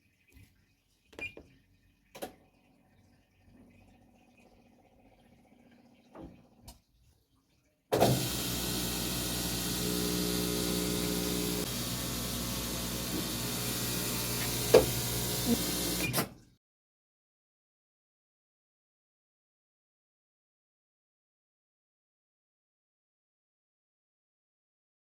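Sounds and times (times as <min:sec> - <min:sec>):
washing machine humming: 0:08.0 - 0:16.4.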